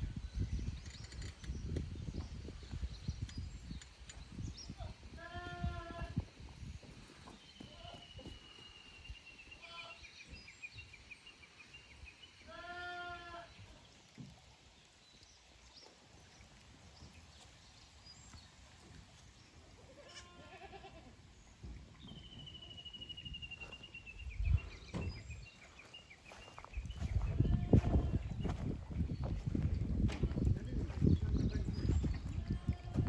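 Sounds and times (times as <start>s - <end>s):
goats bleating: 12.5s - 13.5s, 19.9s - 21.1s.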